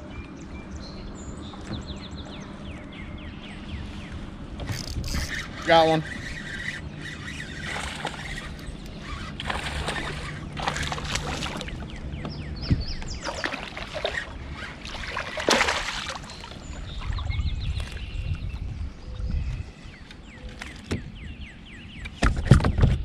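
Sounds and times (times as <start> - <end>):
water splashing around a kayak: 3.8 - 18.7.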